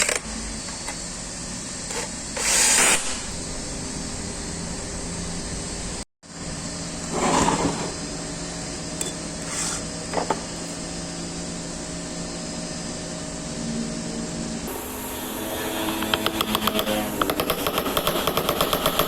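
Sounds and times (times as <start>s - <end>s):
steady background hum: 0.0s - 19.0s
tools scraping on metal: 9.0s - 9.9s.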